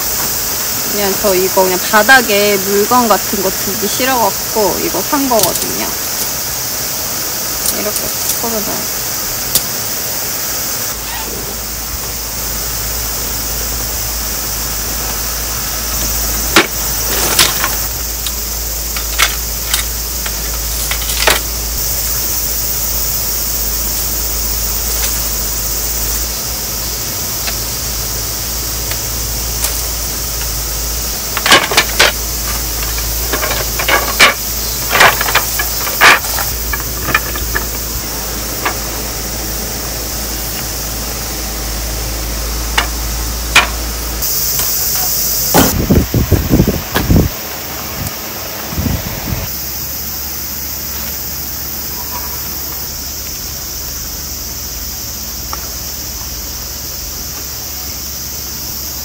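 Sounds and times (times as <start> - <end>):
steady hiss: 0.0 - 59.0
low hum: 2.6 - 50.4
camping gear clattering: 15.9 - 21.6, 31.1 - 39.0.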